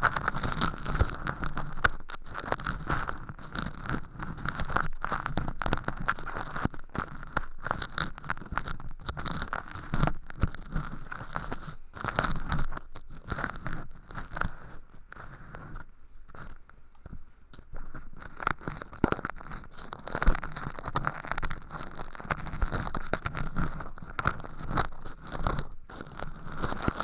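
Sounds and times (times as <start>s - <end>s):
ear pick scraping crispy flakes: 17.6s - 27.0s.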